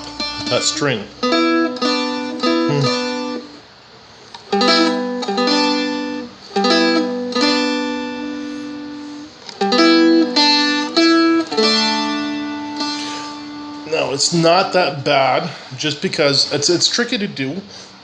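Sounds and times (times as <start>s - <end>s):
dulcimer strummed and plucked: 9.6s - 13.9s.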